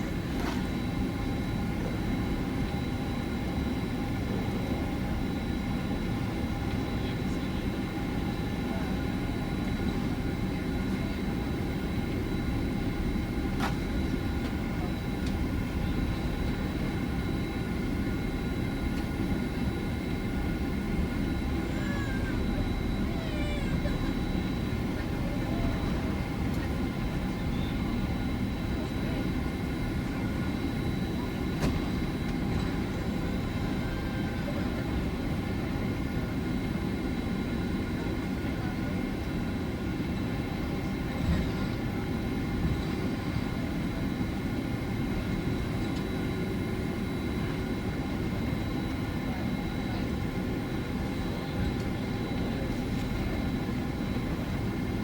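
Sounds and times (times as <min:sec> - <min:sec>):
airplane cabin rumble: 0:00.0 - 0:36.5.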